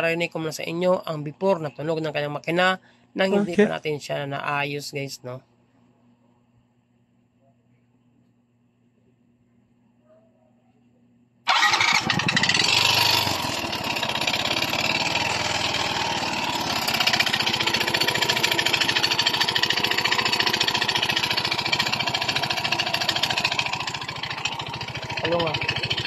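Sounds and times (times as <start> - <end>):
scooter engine metallic clatter: 11.5 - 26.0.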